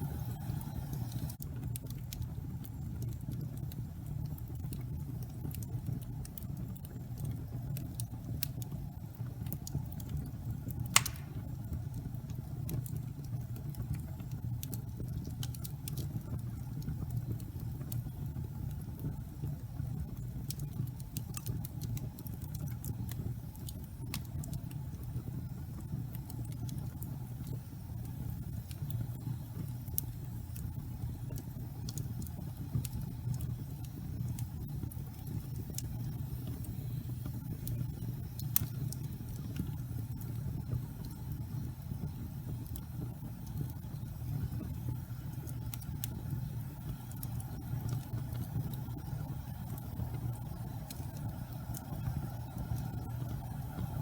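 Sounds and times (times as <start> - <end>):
fire crackling and popping: 0.0 - 54.0
fire rumbling: 0.0 - 54.0.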